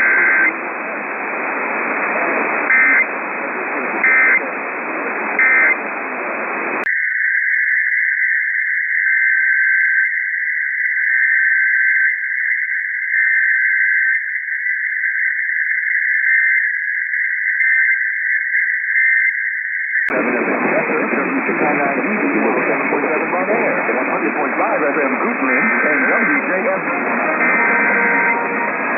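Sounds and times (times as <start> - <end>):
radio static hiss: 0.0 - 28.9
two-pitch electronic data warble: 6.9 - 20.1.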